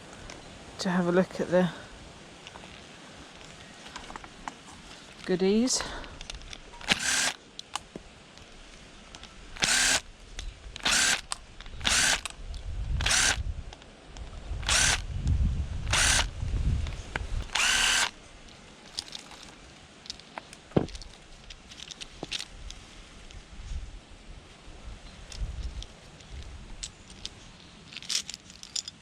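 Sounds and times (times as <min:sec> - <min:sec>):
power drill whirring: 0:06.8 - 0:07.4, 0:09.6 - 0:10.1, 0:10.8 - 0:12.3, 0:13.0 - 0:13.4, 0:14.6 - 0:15.1, 0:15.8 - 0:16.3, 0:17.4 - 0:18.2.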